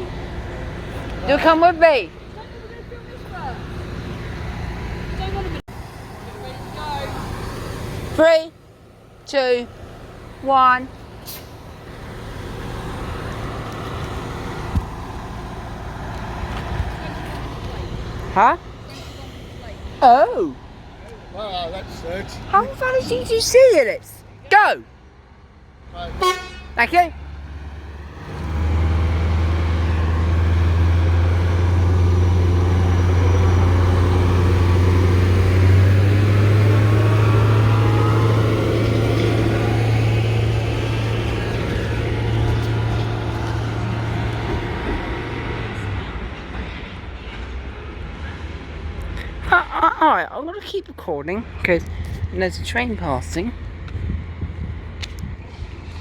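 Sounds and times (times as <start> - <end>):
train rumbling past: 26.0 - 50.4
train running: 38.7 - 49.9.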